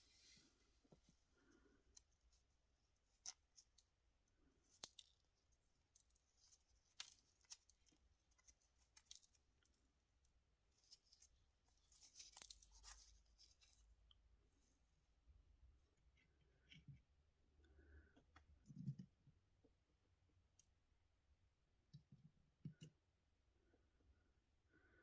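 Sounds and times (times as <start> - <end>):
small parts and tools clicking: 4.6 - 5.3, 5.9 - 9.8.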